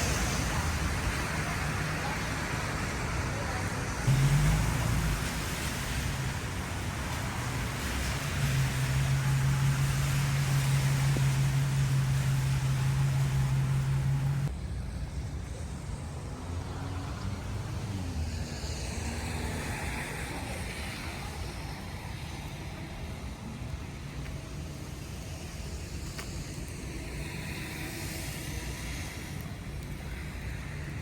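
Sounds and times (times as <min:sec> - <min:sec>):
passing car traffic: 0:00.0 - 0:31.0
loud low hum with hiss: 0:04.1 - 0:14.5.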